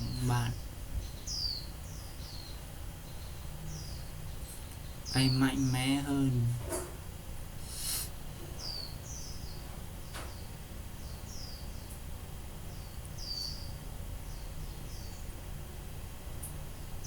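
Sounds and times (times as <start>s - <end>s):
small bird chirping: 0.0s - 7.0s, 7.6s - 15.4s
steady low hum: 0.0s - 17.0s.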